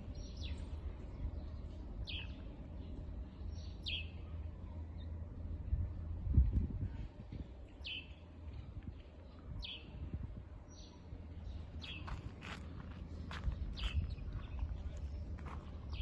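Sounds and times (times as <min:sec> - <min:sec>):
birds chirping: 0:00.0 - 0:06.2, 0:07.5 - 0:16.0
steady low rumble: 0:00.0 - 0:16.0.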